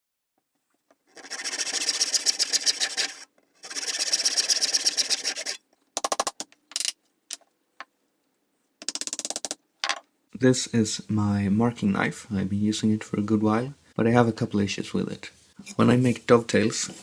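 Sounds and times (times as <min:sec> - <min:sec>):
short scrapes: 0:01.1 - 0:05.6
hand tool rasping: 0:01.1 - 0:06.9.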